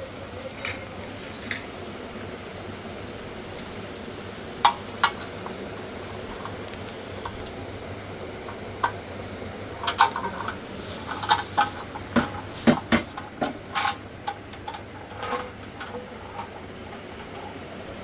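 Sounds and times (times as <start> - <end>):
metal parts clinking and knocking: 0.5 - 1.8, 3.6 - 5.6, 9.7 - 16.5.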